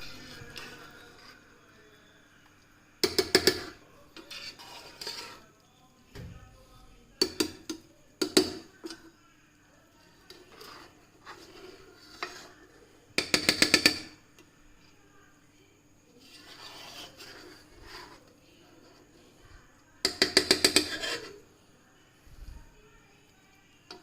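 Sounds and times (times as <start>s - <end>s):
utensil tapping metal pot: 3.0s - 5.4s, 7.2s - 9.0s, 13.2s - 14.2s, 20.0s - 21.4s.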